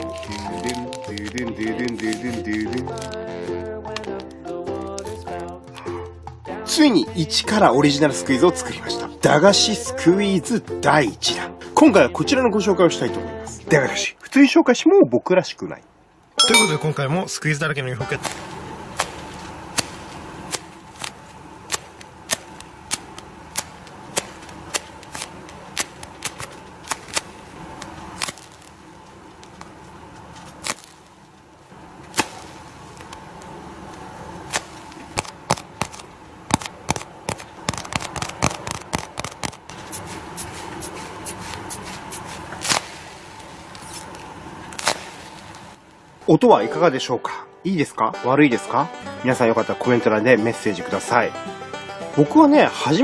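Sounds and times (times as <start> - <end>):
squishy toy crackling clicks: 0.0 - 3.4, 18.2 - 31.2, 34.5 - 40.5.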